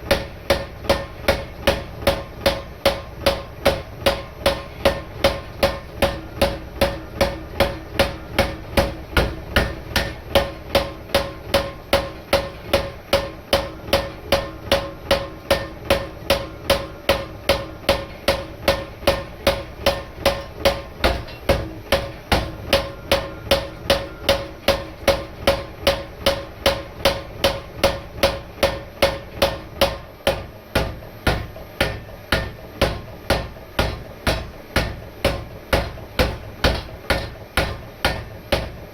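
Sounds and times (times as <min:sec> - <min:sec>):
power hammer blows ringing: 0:09.6 - 0:26.0.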